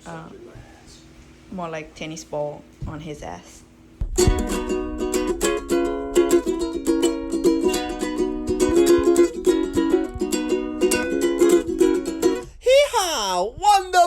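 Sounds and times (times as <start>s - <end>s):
rapidly plucked strings music: 4.0s - 14.0s.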